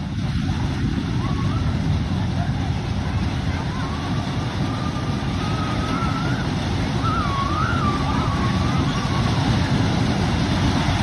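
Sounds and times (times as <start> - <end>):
carnival ride running: 0.0 - 11.0
wavering siren tone: 3.6 - 10.4.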